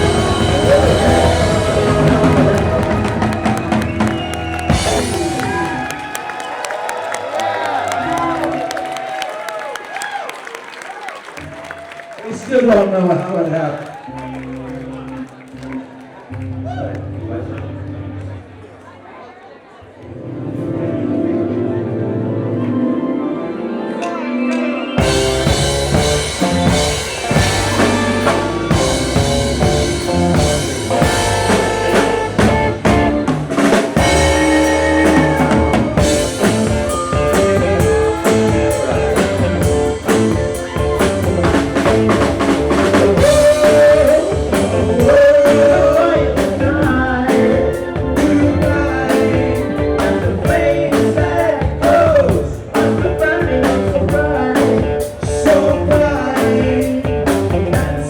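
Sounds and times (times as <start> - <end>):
rock music with singing: 0.0 - 6.2, 21.4 - 58.0.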